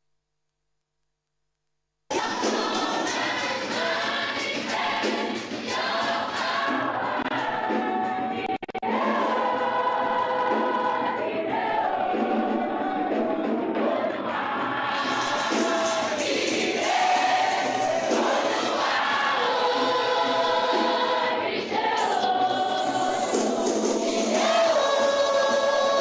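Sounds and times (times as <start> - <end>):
backing music: 2.1 - 26.0
choir singing gospel song: 2.1 - 26.0.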